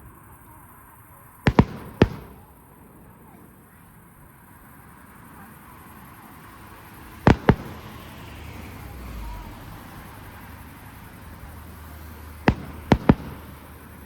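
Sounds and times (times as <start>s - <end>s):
firework shells bursting: 1.5s - 3.7s, 7.3s - 8.3s, 12.4s - 14.0s.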